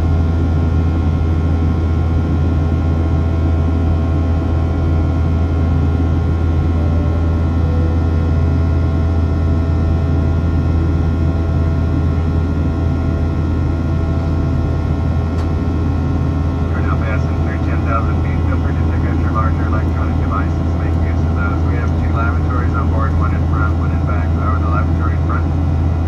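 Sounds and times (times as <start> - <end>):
jet engines droning: 0.1 - 26.0
faint steady tones: 13.8 - 26.0.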